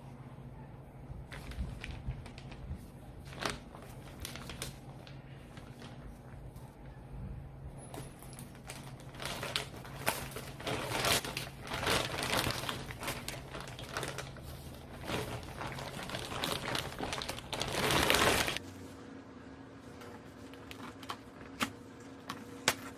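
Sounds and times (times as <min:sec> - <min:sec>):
packaging crinkling and rustling: 0:01.2 - 0:06.7, 0:08.0 - 0:18.6.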